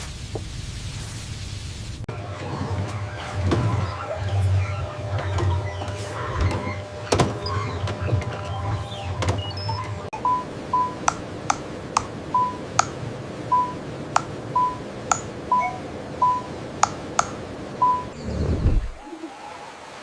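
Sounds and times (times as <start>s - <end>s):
low background hum: 1.7s - 19.3s
sharp clicks: 11.0s - 12.1s, 12.7s - 13.0s, 14.2s - 14.4s, 15.1s - 15.3s, 16.8s - 17.4s
short electronic beeps: 12.4s - 12.6s, 13.5s - 13.8s, 14.6s - 16.5s, 17.8s - 18.1s.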